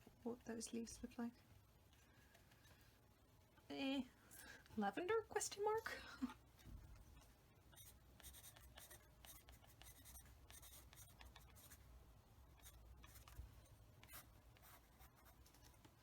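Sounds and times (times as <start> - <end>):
low steady hum: 0.0 - 16.0
paintbrush scratchy strokes: 7.8 - 11.8.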